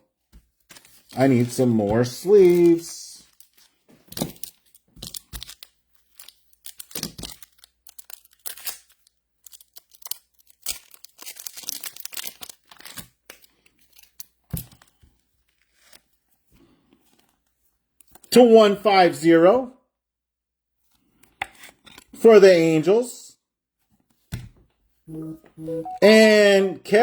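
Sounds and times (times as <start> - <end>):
plastic card sleeves rustling: 0.3 - 16.2.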